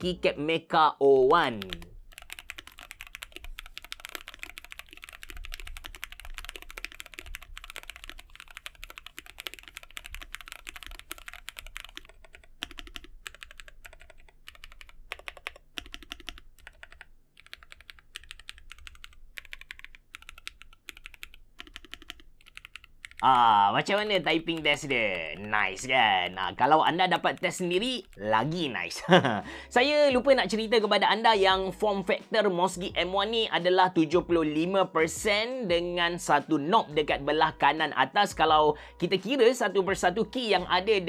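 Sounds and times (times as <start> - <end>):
mechanical keyboard typing: 1.4 - 23.3, 23.9 - 28.2.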